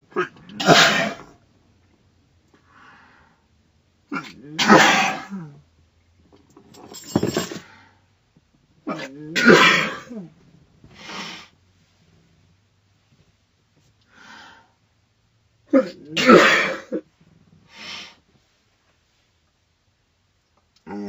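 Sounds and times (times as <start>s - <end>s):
girl sneezing: 0.6s - 1.3s, 4.6s - 5.5s.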